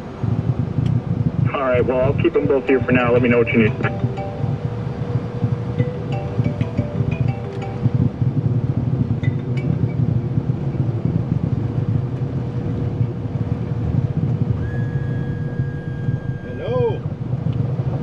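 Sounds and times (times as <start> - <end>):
faint engine whine: 0.0 - 18.0
jet engines rumbling: 0.0 - 18.0
steady high tone: 2.5 - 8.4, 14.6 - 17.0.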